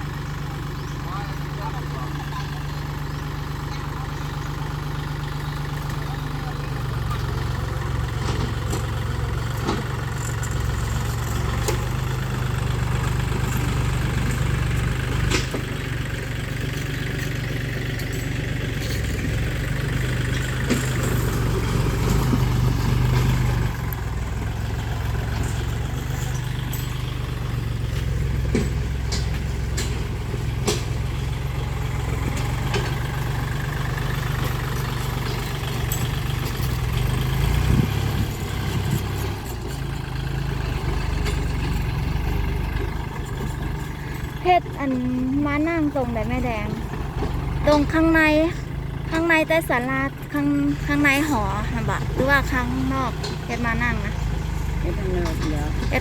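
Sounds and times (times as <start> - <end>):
engine humming: 0.0 - 56.0
sharp knocks and clicks: 28.4 - 31.1.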